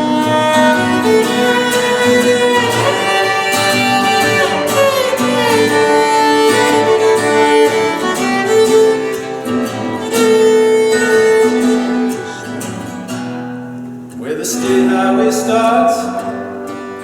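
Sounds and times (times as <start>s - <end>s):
bowed violin long notes: 0.0s - 13.0s
acoustic guitar accompaniment: 0.0s - 17.0s.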